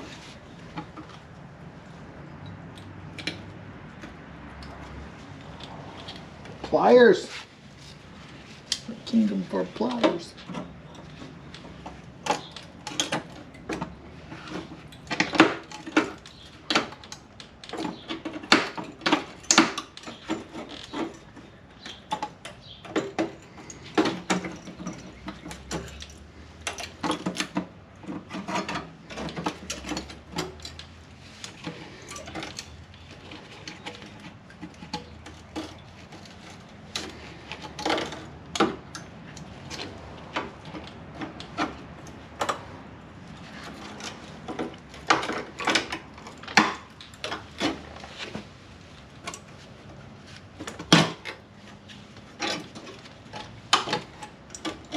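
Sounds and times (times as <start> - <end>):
metal tools clinking: 14.4 - 27.6, 28.3 - 40.0.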